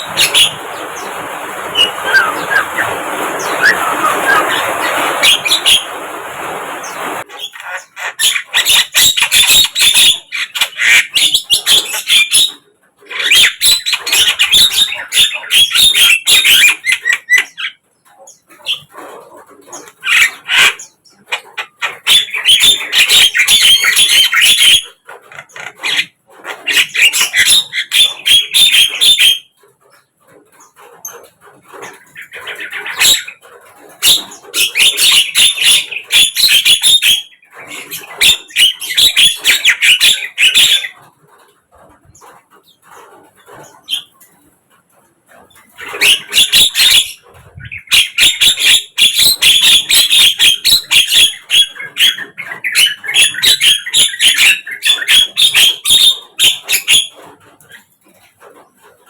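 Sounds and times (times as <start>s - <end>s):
myna chattering song: 0.0s - 6.0s.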